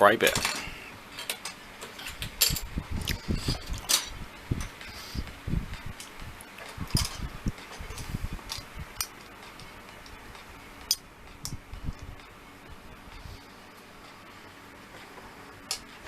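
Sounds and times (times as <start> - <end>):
soft low thumps: 2.7 - 9.0, 9.8 - 13.3.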